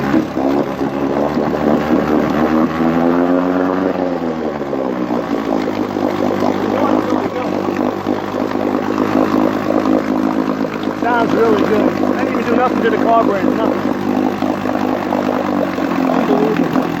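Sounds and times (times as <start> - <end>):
outboard motor running: 0.0 - 17.0.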